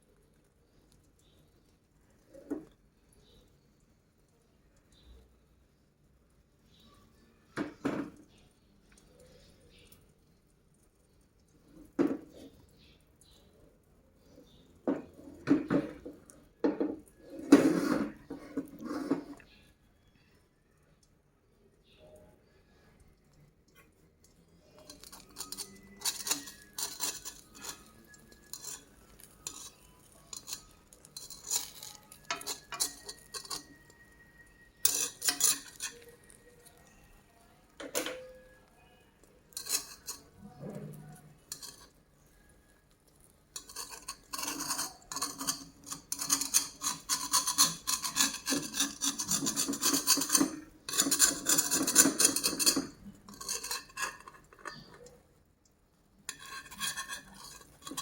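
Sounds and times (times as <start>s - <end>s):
utensils scraping dishes: 14.2s - 19.5s, 24.6s - 37.0s, 37.8s - 38.6s, 39.5s - 42.7s, 43.5s - 55.2s, 56.2s - 58.0s.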